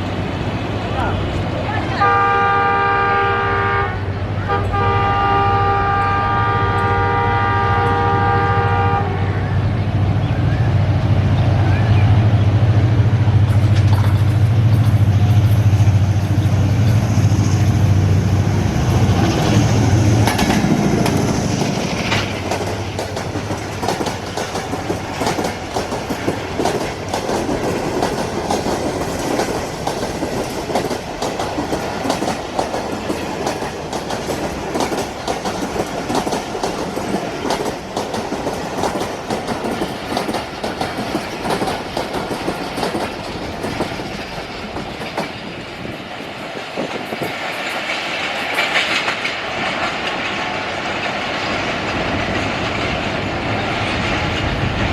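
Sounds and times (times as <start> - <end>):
locomotive engine drone: 5.5 - 27.2
wheels clicking over rail joints: 13.3 - 17.8, 18.8 - 54.9.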